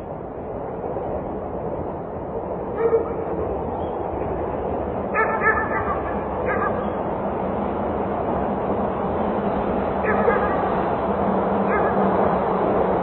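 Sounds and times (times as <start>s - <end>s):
distant traffic hum: 0.0s - 13.0s
dog barking: 2.8s - 3.2s, 5.2s - 6.8s, 10.0s - 10.6s, 11.7s - 12.0s.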